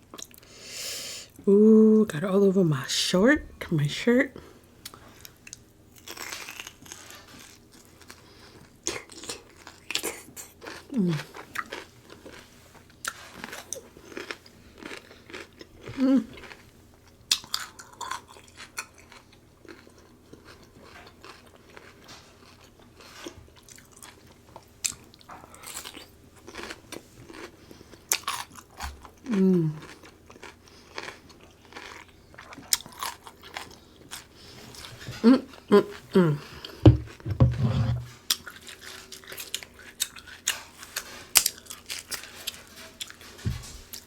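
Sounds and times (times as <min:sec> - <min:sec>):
wet chewing and smacking: 0:04.8 - 0:44.0.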